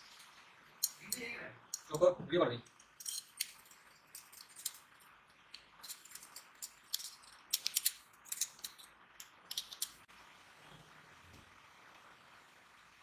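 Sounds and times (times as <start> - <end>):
small metal parts clicking: 0.0 - 1.9, 2.7 - 10.0.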